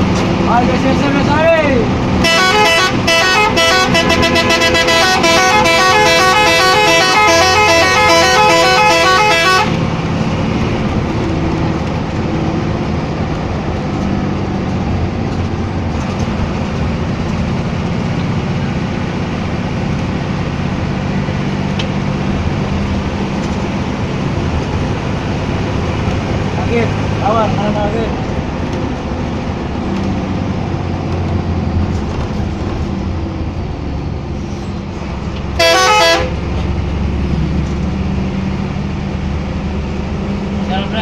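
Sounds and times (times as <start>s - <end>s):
bus engine running: 0.0s - 41.0s
road noise: 0.0s - 41.0s
musical air horn tune: 2.2s - 9.8s, 35.6s - 36.3s.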